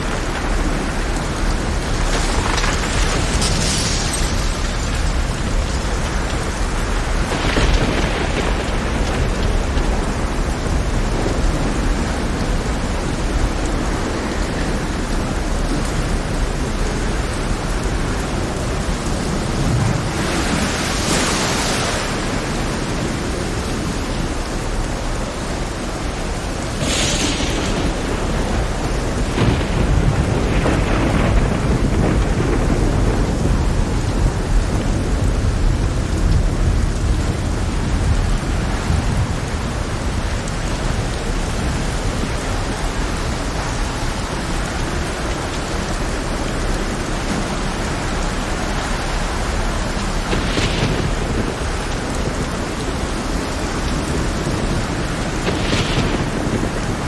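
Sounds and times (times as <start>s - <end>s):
heavy rain pouring: 0.0s - 57.0s
thunder rumbling: 0.0s - 57.0s
rough sea swells rushing: 19.3s - 23.8s.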